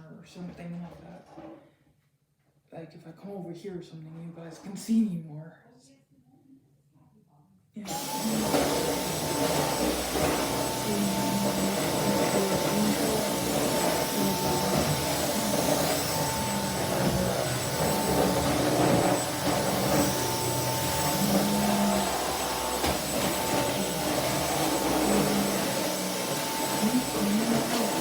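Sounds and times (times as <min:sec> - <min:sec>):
vacuum cleaner running: 0:07.8 - 0:28.0.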